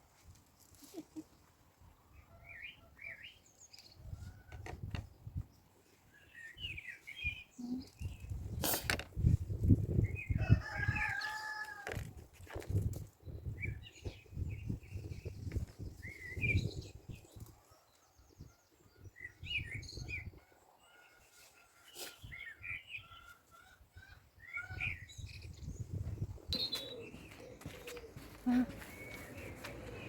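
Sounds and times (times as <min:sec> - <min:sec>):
small birds chirping: 0:05.0 - 0:08.8, 0:24.6 - 0:30.0.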